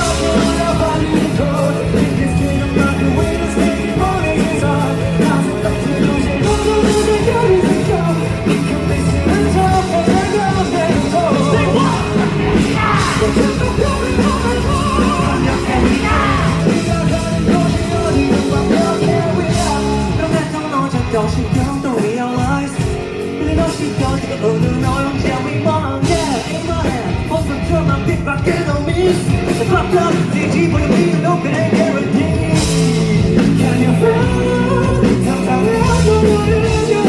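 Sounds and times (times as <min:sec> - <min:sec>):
person singing or yelling: 0:00.0 - 0:22.8
live rock band playing: 0:00.0 - 0:37.0.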